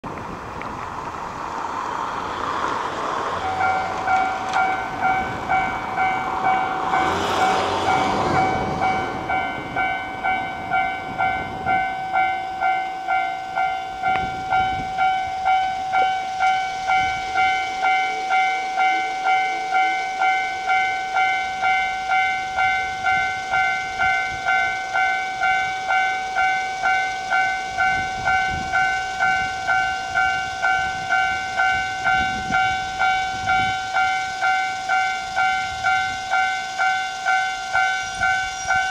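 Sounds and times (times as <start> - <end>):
loud rushing noise: 0.3 - 11.8
level crossing warning bell: 2.2 - 38.9.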